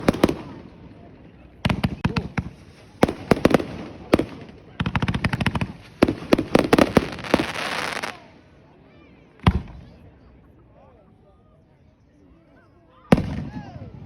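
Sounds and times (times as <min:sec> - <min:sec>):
fireworks cracking: 0:00.0 - 0:01.0, 0:01.6 - 0:08.3
crackling fizz of fireworks: 0:00.0 - 0:08.6.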